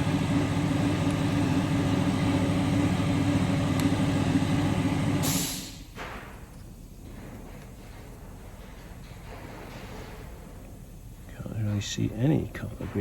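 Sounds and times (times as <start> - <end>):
loud machine hum: 0.0 - 5.6
short burst of hiss: 5.2 - 5.9.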